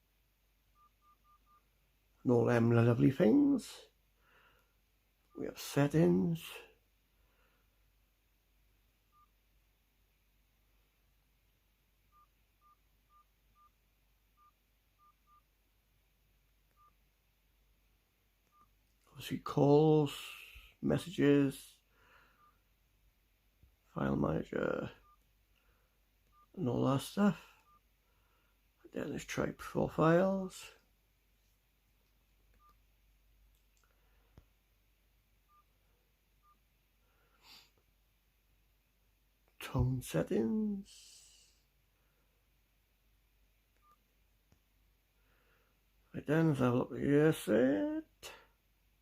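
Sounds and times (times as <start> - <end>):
mobile phone keypad beeps: 0.8 - 1.7, 9.1 - 9.4, 12.1 - 13.8, 14.4 - 15.5, 16.7 - 17.0, 18.5 - 18.7, 26.3 - 26.5, 27.6 - 27.8, 35.5 - 35.7, 36.4 - 36.6, 43.8 - 44.0.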